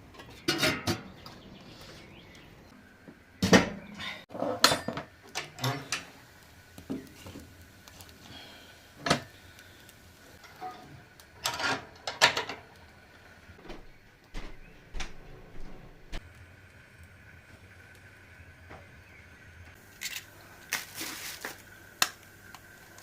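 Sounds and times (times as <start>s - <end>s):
dishes and pots clattering: 0.2s - 1.4s, 3.4s - 6.1s, 10.4s - 12.6s.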